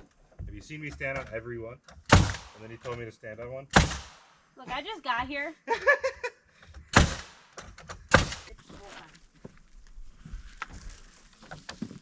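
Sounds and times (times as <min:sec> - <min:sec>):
nail driven into wood: 0:01.9 - 0:03.0, 0:03.7 - 0:04.3, 0:06.7 - 0:08.5.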